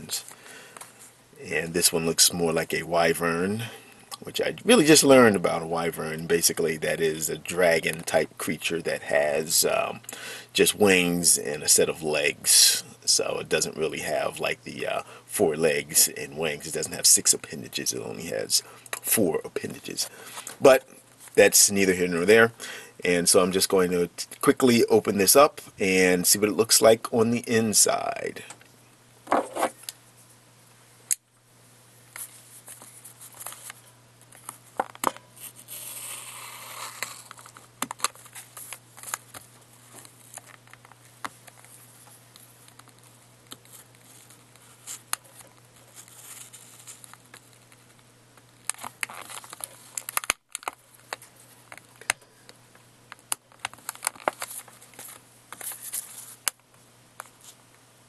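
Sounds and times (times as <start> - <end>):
plastic packaging crinkling: 48.6 - 51.9, 53.5 - 56.4.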